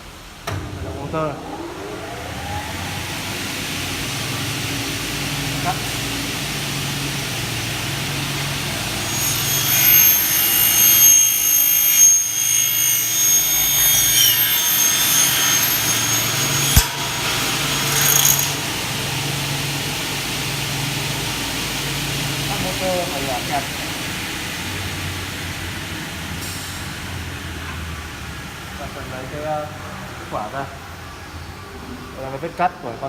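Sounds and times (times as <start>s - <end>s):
saw blade cutting metal whine: 1.4s - 23.8s
saw motor humming: 1.5s - 22.5s
sharp click: 14.1s - 19.0s.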